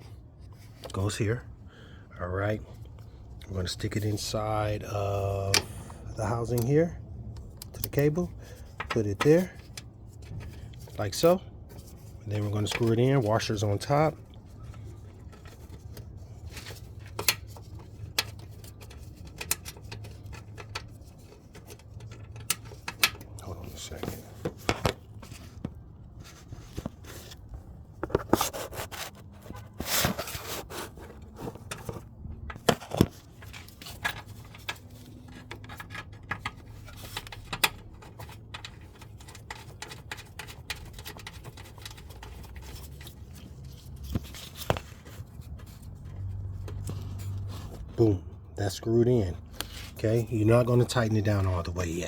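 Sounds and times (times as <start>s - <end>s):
handling noise: 8.8s - 48.2s
bolt being screwed in by hand: 14.1s - 27.4s, 31.3s - 48.0s.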